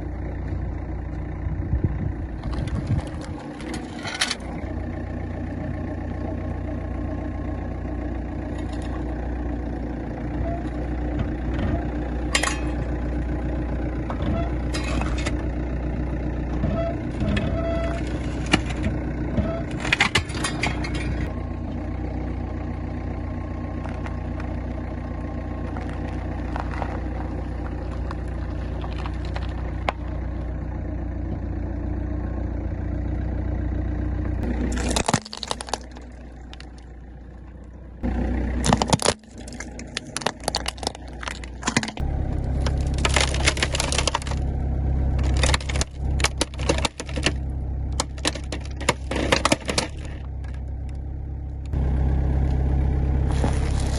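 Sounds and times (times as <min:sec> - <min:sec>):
car engine humming: 0:00.0 - 0:53.9
tyres crushing objects: 0:17.2 - 0:19.0, 0:19.6 - 0:21.3, 0:34.4 - 0:37.0, 0:38.5 - 0:50.7, 0:53.2 - 0:53.9.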